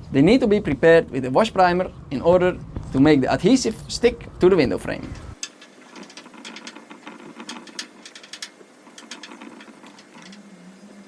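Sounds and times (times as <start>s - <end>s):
light mechanical clicks and ticks: 5.0s - 10.5s.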